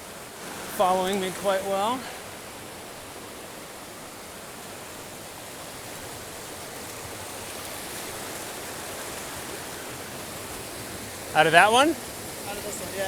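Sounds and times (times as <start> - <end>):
creek water rushing: 0.0 - 13.0.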